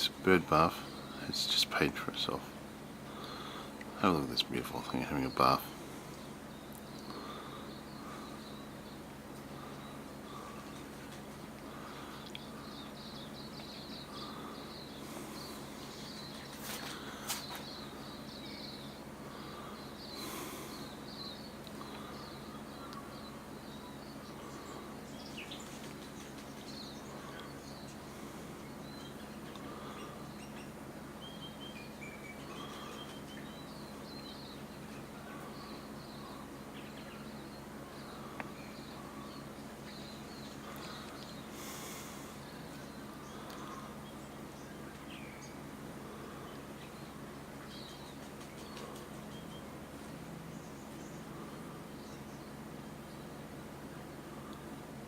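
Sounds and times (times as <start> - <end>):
steady low hum: 0.0 - 55.0
high rapid bird chirping: 3.1 - 54.2.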